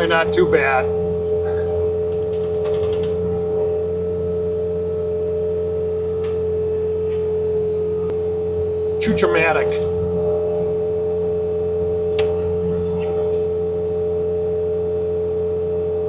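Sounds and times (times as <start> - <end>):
diesel engine drone: 0.0 - 16.0
snowblower high whine: 0.0 - 16.0.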